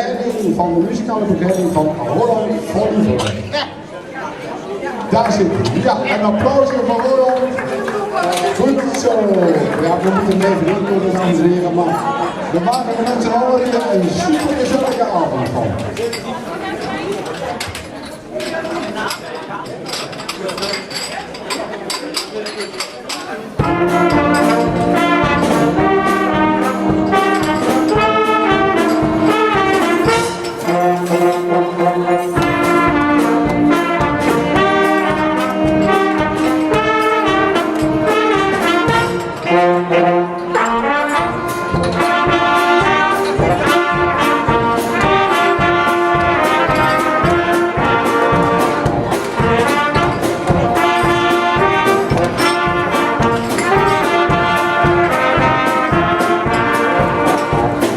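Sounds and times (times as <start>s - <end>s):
steady drum beat: 23.5s - 30.7s, 31.5s - 39.4s, 40.9s - 57.9s
trombones and trumpets: 23.5s - 57.9s
dance band with brass: 23.6s - 57.9s.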